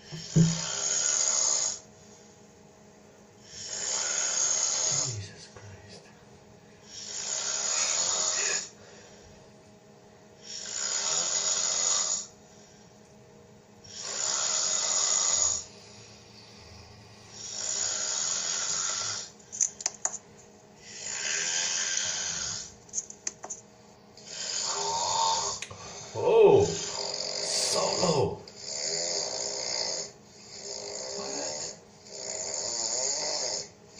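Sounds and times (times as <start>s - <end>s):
man snoring: 0.0s - 1.9s, 3.5s - 5.4s, 6.9s - 8.8s, 10.4s - 12.3s, 13.9s - 15.8s, 17.4s - 19.4s, 20.8s - 22.7s, 24.3s - 33.8s.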